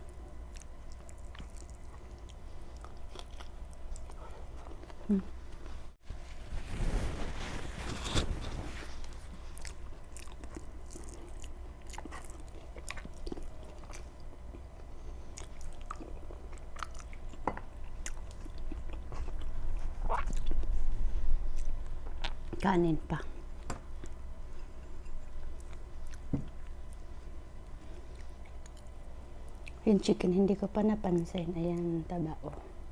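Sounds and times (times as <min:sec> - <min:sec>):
person chewing food: 0:00.0 - 0:05.7, 0:09.0 - 0:22.6, 0:24.0 - 0:29.8.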